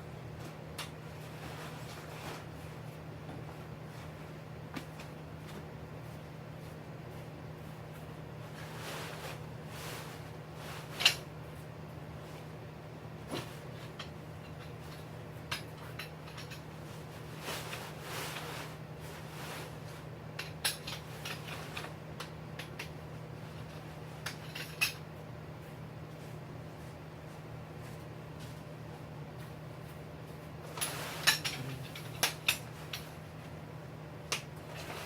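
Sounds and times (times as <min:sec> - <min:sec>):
tent fabric rustling: 0:08.5 - 0:11.0, 0:16.9 - 0:20.0.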